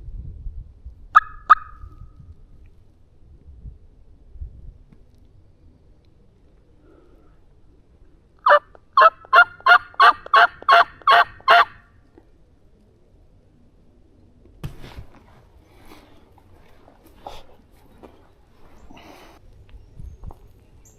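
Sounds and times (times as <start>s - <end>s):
turkey hen yelps: 8.4s - 11.8s
rustling scuffle: 14.6s - 19.0s.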